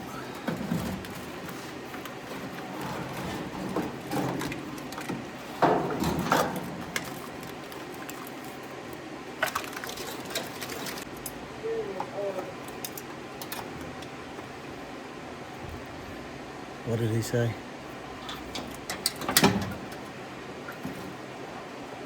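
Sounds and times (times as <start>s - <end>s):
wiring harness scraping and rustling: 0.4s - 8.6s, 9.4s - 11.2s.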